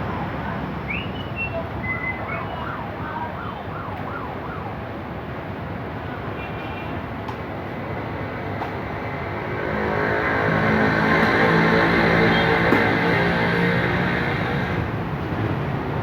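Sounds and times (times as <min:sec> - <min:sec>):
motorcycle engine revving: 0:09.3 - 0:15.0.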